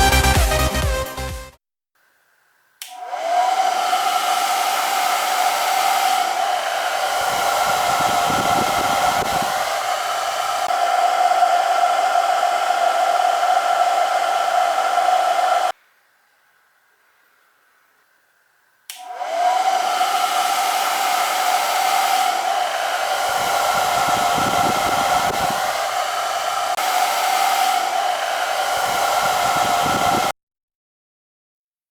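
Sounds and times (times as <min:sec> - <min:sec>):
small hair dryer motor whining: 0:02.0 - 0:30.4
rushing air: 0:02.9 - 0:15.8, 0:18.9 - 0:30.3.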